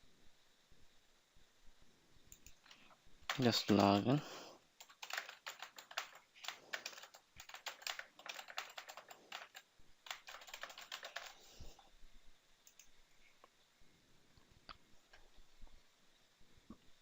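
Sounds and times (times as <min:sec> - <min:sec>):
typing on computer keyboard: 0:02.3 - 0:04.2, 0:04.8 - 0:11.5.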